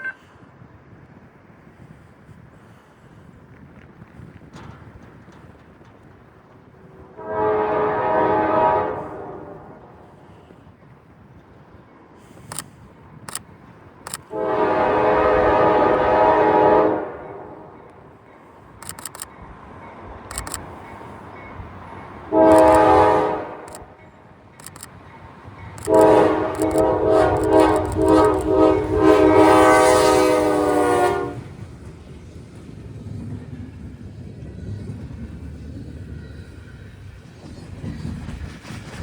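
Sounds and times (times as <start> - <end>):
locomotive air horn blasts: 7.0 - 10.2, 14.3 - 17.8, 22.3 - 23.9, 25.8 - 31.6
sharp clicks: 12.4 - 13.5, 14.1 - 14.3, 18.8 - 19.3, 20.3 - 20.8, 22.5 - 23.9, 24.6 - 25.0, 25.8 - 28.9.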